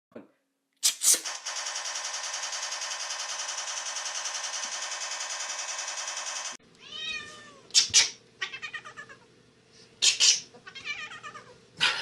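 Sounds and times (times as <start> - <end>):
cat meowing: 6.8 - 7.7, 8.4 - 9.2, 10.6 - 11.6.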